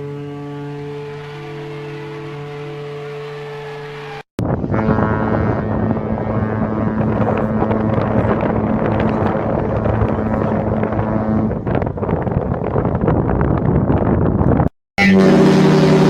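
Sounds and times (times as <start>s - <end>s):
ship's horn blast: 0.0s - 12.0s, 15.0s - 16.0s
wind rumbling on microphone: 4.4s - 16.0s.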